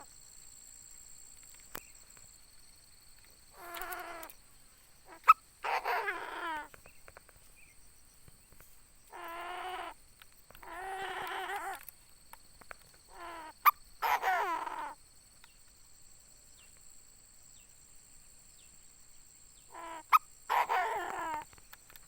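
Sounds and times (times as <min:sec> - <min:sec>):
francolin calling: 0:03.2 - 0:07.8, 0:08.4 - 0:11.9, 0:12.6 - 0:15.6, 0:18.6 - 0:22.0.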